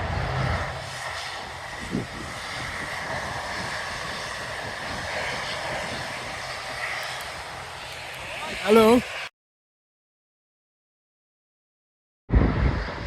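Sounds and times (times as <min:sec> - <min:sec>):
distant jet engines whining: 0:00.0 - 0:09.3, 0:12.3 - 0:13.0.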